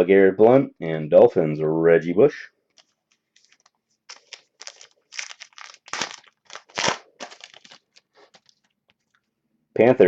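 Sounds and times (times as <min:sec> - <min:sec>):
trading cards crinkling and rustling: 0:02.7 - 0:09.3.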